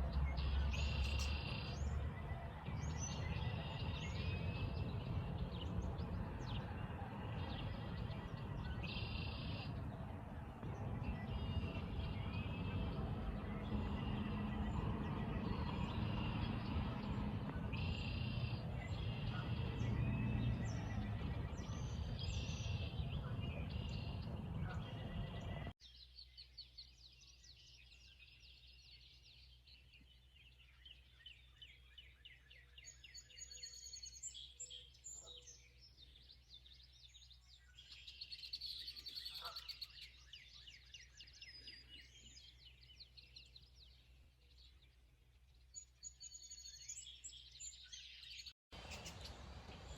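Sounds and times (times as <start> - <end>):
birds singing: 0.0 - 49.9
birdsong trills: 0.0 - 49.9.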